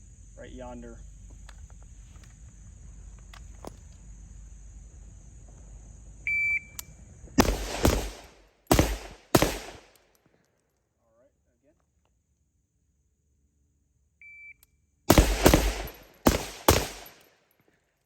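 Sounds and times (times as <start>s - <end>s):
rifle gunshots: 7.4s - 10.0s, 15.1s - 17.3s.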